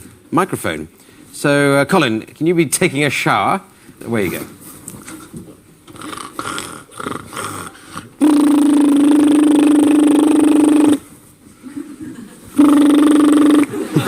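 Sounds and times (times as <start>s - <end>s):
loud buzzing vocal hum: 5.9s - 11.1s, 12.6s - 14.0s
man making vocal sound effects: 8.2s - 11.0s, 12.6s - 13.8s.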